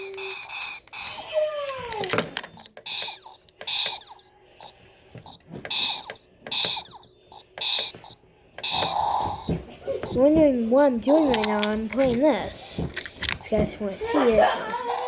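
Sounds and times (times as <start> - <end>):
short electronic beeps: 5.7 - 7.0.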